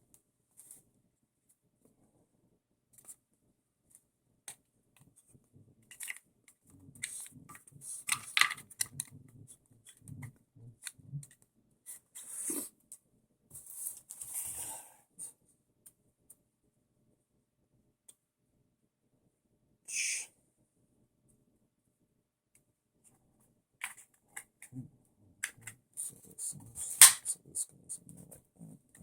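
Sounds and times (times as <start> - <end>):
small parts clicking and rattling: 7.0 - 9.1.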